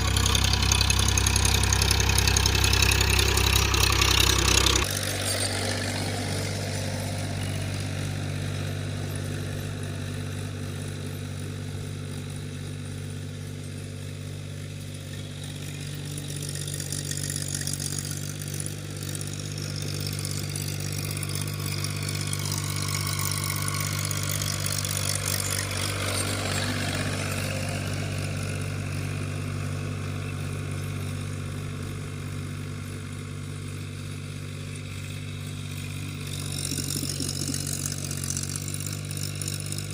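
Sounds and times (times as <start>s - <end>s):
tractor engine running: 0.0s - 39.9s.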